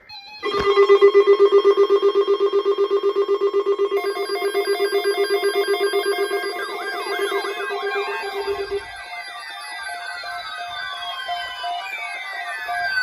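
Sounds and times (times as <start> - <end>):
wailing siren: 0.0 - 13.0
slow beeping tone: 0.1 - 13.0
electric bell ringing rapidly: 0.6 - 8.9.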